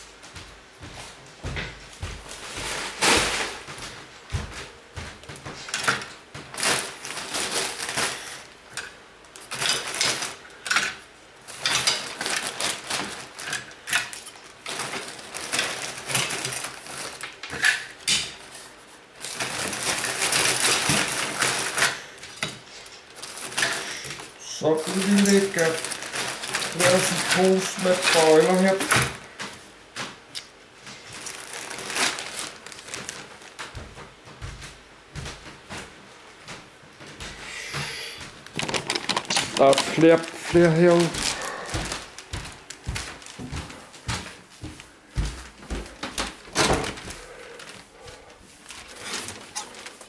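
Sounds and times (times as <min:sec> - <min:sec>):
plastic bags rustling: 0:02.0 - 0:34.4, 0:38.2 - 0:50.0
clothes hangers clattering: 0:05.7 - 0:18.6, 0:19.2 - 0:29.2, 0:38.4 - 0:41.4, 0:49.0 - 0:50.0.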